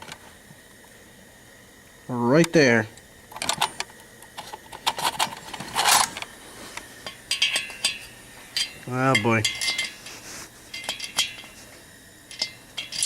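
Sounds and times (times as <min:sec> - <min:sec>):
metal tools clinking and rattling: 0:04.4 - 0:06.2, 0:07.0 - 0:10.1, 0:10.7 - 0:11.6, 0:12.3 - 0:13.0.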